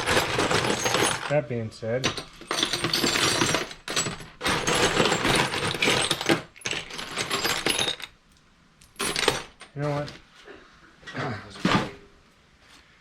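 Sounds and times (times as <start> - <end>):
nuts and bolts clattering: 0.0 - 1.4, 2.0 - 8.2, 8.8 - 10.3.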